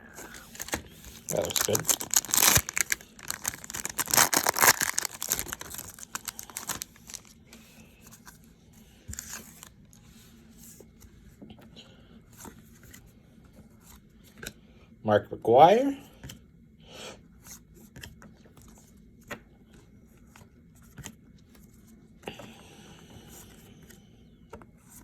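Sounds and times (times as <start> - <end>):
cards rustling and clicking: 0.0 - 8.3, 9.1 - 9.7
wrapper tearing and crinkling: 0.2 - 7.4.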